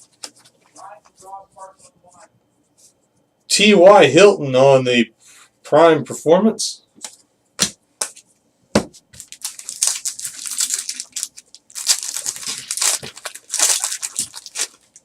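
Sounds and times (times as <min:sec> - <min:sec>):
wrapper tearing and crinkling: 0:09.2 - 0:15.0.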